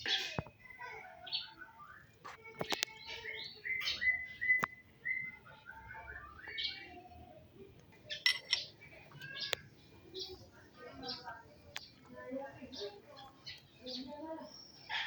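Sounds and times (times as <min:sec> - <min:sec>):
songbirds chirping and whistling: 0:00.0 - 0:15.0.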